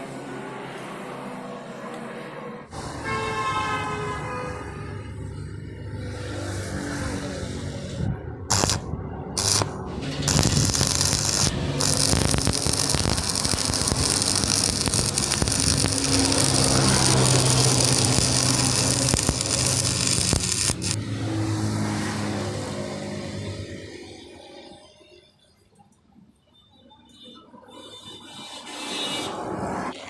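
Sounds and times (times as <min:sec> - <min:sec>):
angle grinder on steel: 0:08.5 - 0:08.8, 0:09.4 - 0:21.1.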